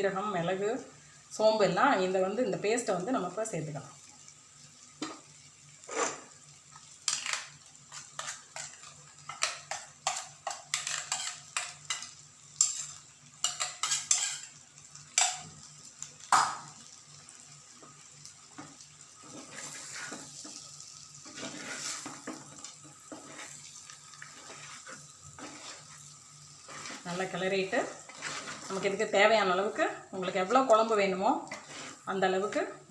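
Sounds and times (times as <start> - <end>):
spice paste sizzling: 0.0 - 32.9
metal spoon scraping a pot: 8.2 - 12.0, 12.6 - 14.5, 24.2 - 26.0, 28.0 - 29.0.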